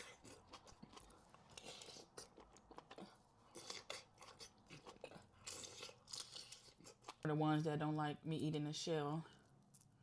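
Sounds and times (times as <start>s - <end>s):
mouth chewing food: 0.0s - 7.3s.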